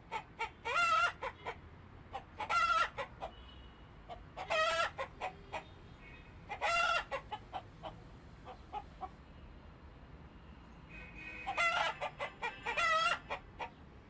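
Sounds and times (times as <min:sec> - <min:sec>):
poultry clucks and chirps: 0:00.0 - 0:03.5, 0:04.1 - 0:05.8, 0:06.5 - 0:09.2, 0:10.9 - 0:13.9
poultry harsh calls: 0:04.1 - 0:09.1, 0:10.9 - 0:13.7.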